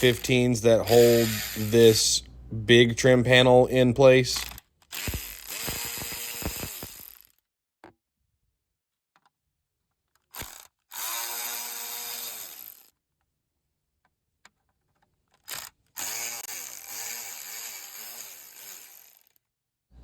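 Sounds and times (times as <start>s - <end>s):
drill trigger click: 0.0s - 1.8s, 4.4s - 7.2s
cordless drill motor running: 0.0s - 2.0s, 4.4s - 7.3s, 10.3s - 12.9s, 15.5s - 19.4s.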